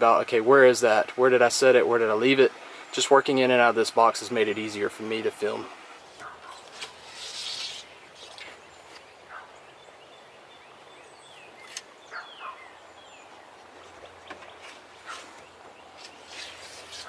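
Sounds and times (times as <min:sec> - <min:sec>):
bird chirps: 0:07.5 - 0:17.0.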